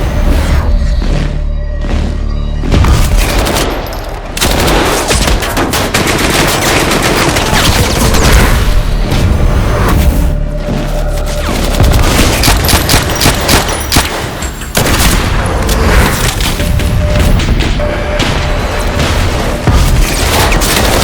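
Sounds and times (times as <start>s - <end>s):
music: 0.0s - 21.0s
rapid automatic gunfire: 4.4s - 8.7s, 11.3s - 21.0s.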